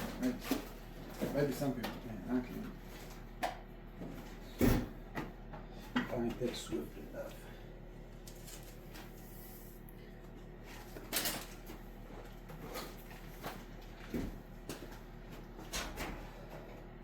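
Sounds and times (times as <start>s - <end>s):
steady low hum: 0.0s - 17.0s
tools and parts clattering: 11.0s - 11.7s.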